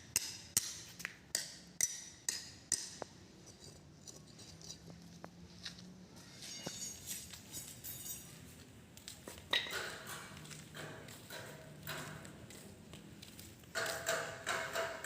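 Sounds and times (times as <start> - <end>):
sharp metallic clinks: 6.3 - 8.5.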